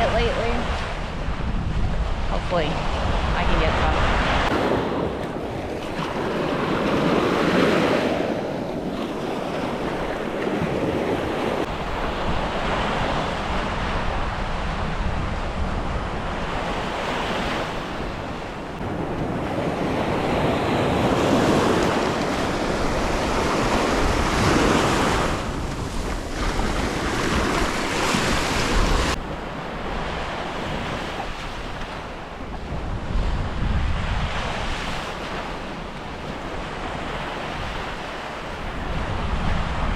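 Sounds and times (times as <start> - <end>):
surf breaking on beach: 0.0 - 39.9
wind buffeting microphone: 0.0 - 39.9.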